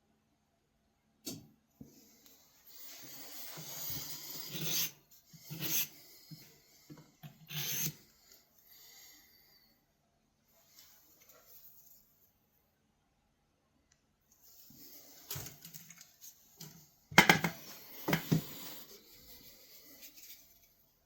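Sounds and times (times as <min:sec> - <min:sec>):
knife blade scraping on abrasive: 0:03.5 - 0:06.0, 0:07.5 - 0:08.0.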